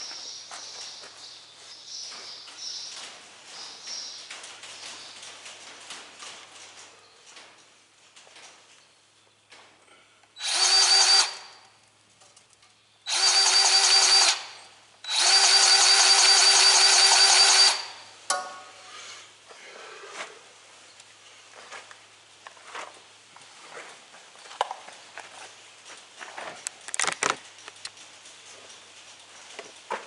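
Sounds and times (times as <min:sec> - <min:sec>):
grease gun motor whining: 0:10.4 - 0:11.6, 0:13.1 - 0:17.9.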